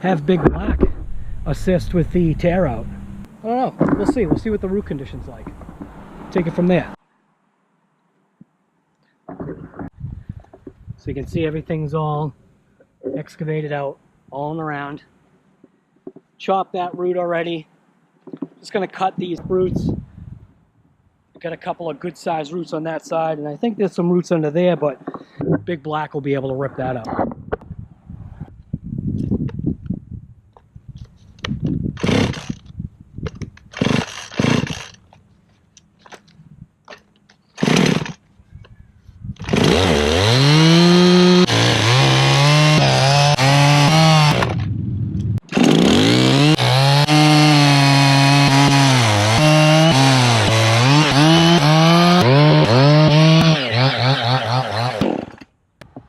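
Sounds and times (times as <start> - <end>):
chainsaw cutting roots: 32.0 - 32.6, 33.6 - 35.1, 37.6 - 38.2, 39.4 - 44.6, 45.4 - 55.5.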